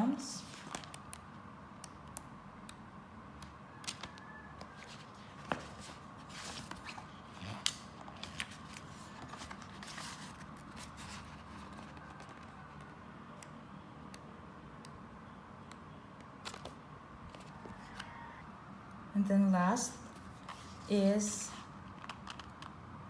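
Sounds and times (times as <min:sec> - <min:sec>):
paper rustling: 0:00.4 - 0:01.0, 0:03.9 - 0:12.8, 0:20.1 - 0:22.7.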